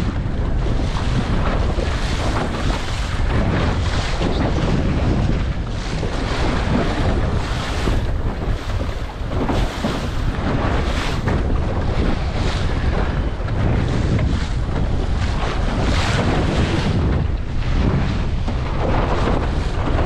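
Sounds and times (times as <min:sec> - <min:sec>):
waves splashing: 0:00.0 - 0:20.0
wind buffeting microphone: 0:00.0 - 0:20.0.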